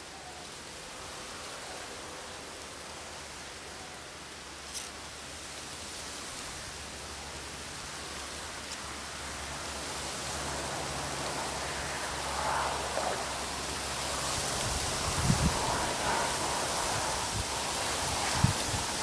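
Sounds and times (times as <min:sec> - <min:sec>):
wind rustling bamboo leaves: 0:00.0 - 0:19.0.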